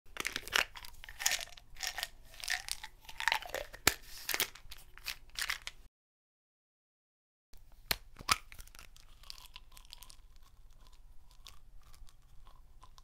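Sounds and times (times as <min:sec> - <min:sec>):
pills rattling in a bottle: 0:00.1 - 0:05.8.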